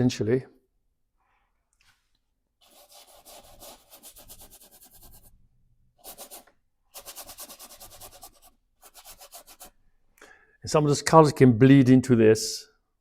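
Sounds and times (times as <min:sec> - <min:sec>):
paintbrush scrubbing on canvas: 0:02.6 - 0:05.4, 0:06.0 - 0:09.8.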